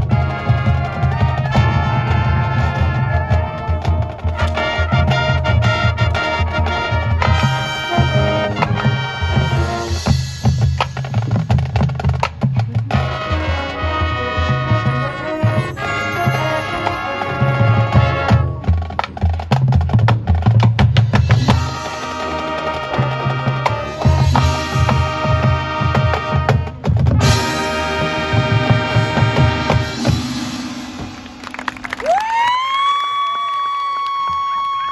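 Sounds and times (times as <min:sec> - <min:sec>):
brass chords: 0:00.0 - 0:10.8, 0:12.9 - 0:19.1, 0:21.3 - 0:32.0
marching band playing: 0:00.0 - 0:32.6
sharp percussion strikes: 0:14.9 - 0:19.5, 0:21.1 - 0:32.6.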